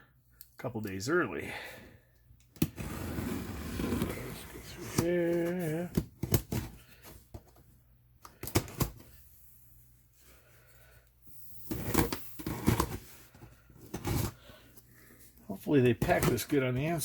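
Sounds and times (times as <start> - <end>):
cardboard box scraping and rustling: 2.7 - 5.9, 11.7 - 14.4.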